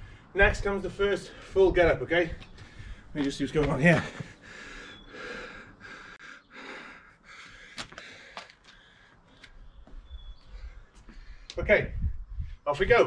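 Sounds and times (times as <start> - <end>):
man breathing hard: 0.0 - 0.4, 2.6 - 3.1, 4.0 - 9.7, 10.4 - 12.6.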